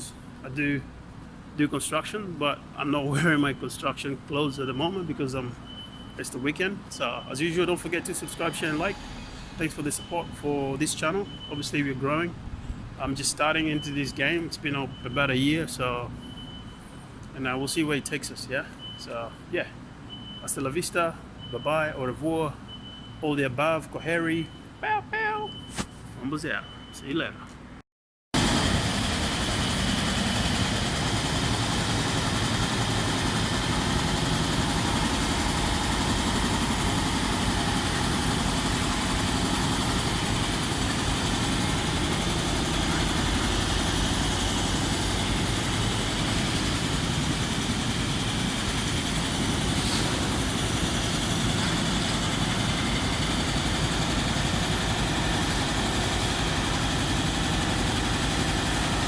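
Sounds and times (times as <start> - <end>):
engine idling: 28.4 - 59.0.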